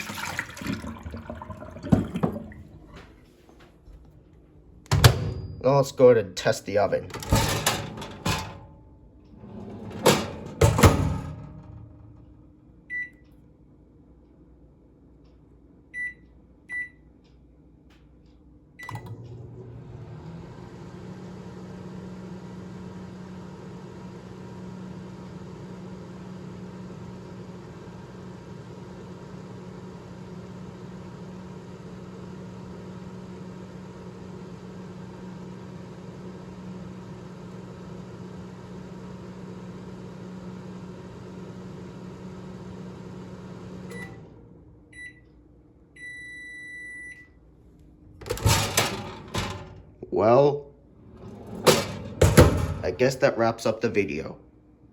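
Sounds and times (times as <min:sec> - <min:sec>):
oven humming: 0:00.0 - 0:54.9
oven click: 0:04.8 - 0:05.7, 0:06.9 - 0:12.3, 0:48.1 - 0:50.1, 0:51.1 - 0:53.2
knocks on oven: 0:51.6 - 0:52.9.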